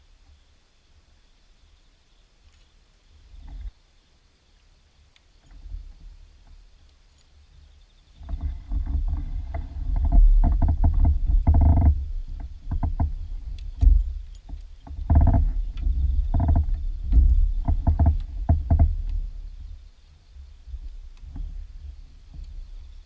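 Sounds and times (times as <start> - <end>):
low rumble: 8.4 - 23.0.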